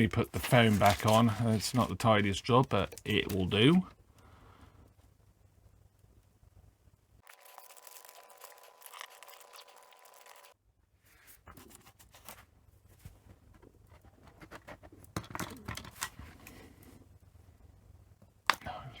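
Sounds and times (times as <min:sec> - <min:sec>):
clicks and rustles of handling: 0:00.0 - 0:04.0, 0:11.5 - 0:16.9.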